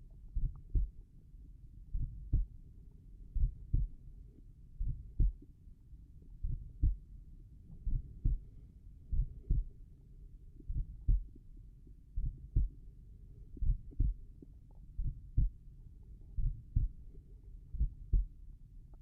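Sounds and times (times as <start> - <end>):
slow heartbeat thumps: 0.3 - 1.0, 1.9 - 2.6, 3.4 - 4.0, 4.8 - 5.5, 6.4 - 7.1, 7.7 - 8.5, 9.1 - 9.8, 10.6 - 11.4, 12.2 - 12.8, 13.5 - 15.6, 16.3 - 17.1, 17.8 - 18.4.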